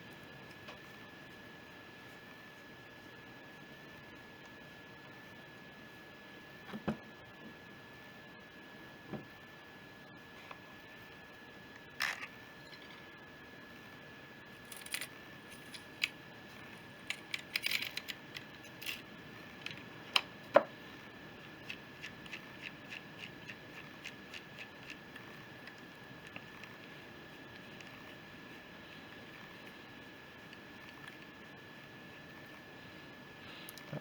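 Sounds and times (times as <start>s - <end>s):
metal parts clicking and tapping: 14.7s - 16.1s, 17.1s - 19.0s
light evenly spaced ticks: 21.4s - 32.5s.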